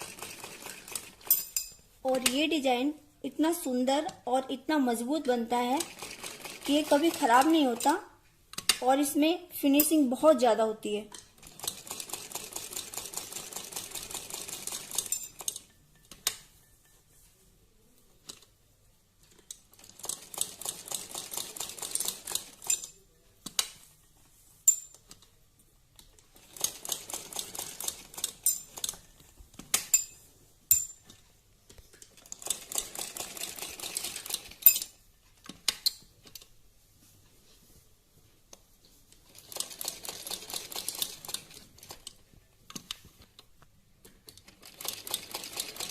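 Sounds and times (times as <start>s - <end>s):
sewing machine stitching: 0.0s - 1.3s, 5.7s - 7.9s, 19.7s - 22.7s, 26.4s - 29.1s, 32.2s - 34.6s, 39.3s - 42.0s, 44.4s - 45.9s.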